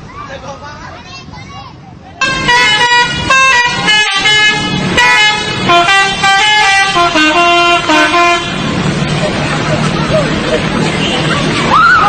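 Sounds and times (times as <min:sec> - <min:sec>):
bus horn playing a tune: 0:02.2 - 0:08.8.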